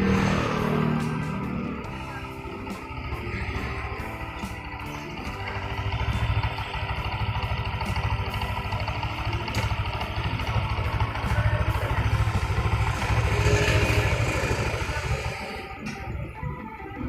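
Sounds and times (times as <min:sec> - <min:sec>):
scooter engine running: 0:00.0 - 0:16.6.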